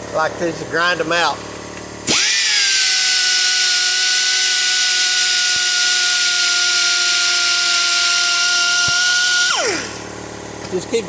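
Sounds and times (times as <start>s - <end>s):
die grinder whining: 2.1s - 10.4s.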